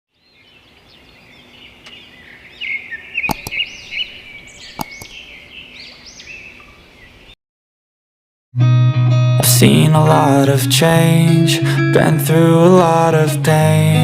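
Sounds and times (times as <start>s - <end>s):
small birds chirping: 0.1s - 7.4s
sharp clicks: 3.3s - 3.7s, 4.7s - 5.2s.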